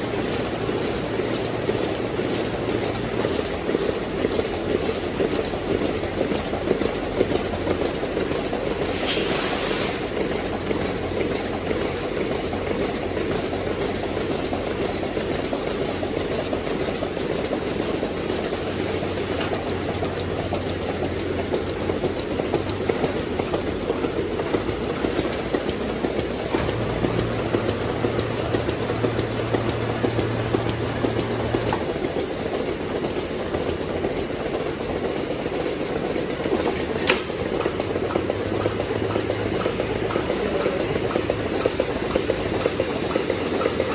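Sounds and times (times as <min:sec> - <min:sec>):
machinery rattling: 0:00.0 - 0:43.9
low machine hum: 0:17.4 - 0:43.9.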